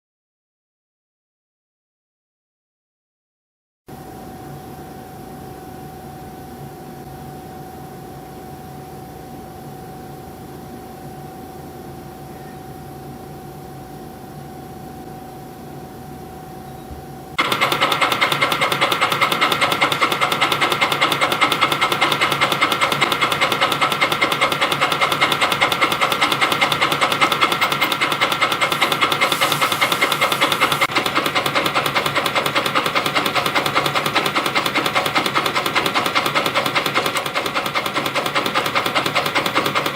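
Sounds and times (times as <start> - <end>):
machine humming: 3.9 - 39.9
fast mechanical rattle: 17.4 - 39.9.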